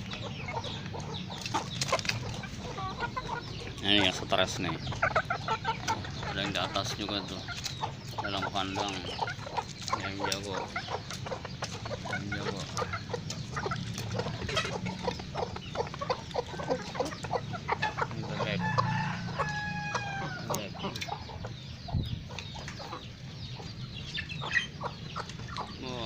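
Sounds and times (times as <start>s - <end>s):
chickens clucking: 0.0s - 26.0s
rooster crowing: 18.4s - 20.6s.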